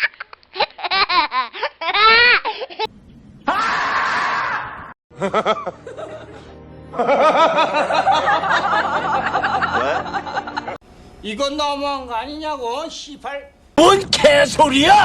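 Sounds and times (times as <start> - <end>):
laughter sound effects: 5.1 - 10.8.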